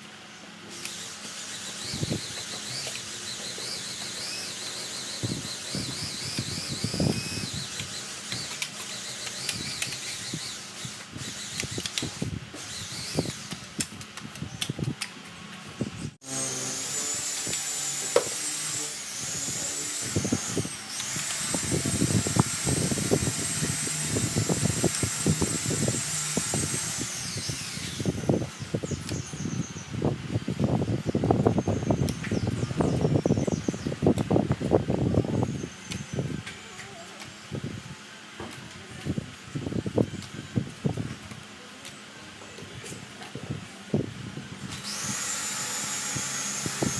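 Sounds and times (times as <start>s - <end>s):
power sander whining: 0.7s - 13.8s, 16.2s - 29.5s, 44.6s - 46.9s.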